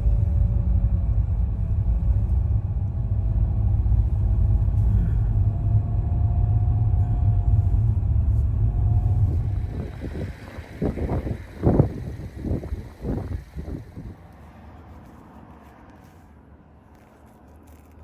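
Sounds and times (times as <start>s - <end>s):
car rumble from inside cabin: 0.0s - 14.2s
faint engine hum: 0.0s - 18.0s.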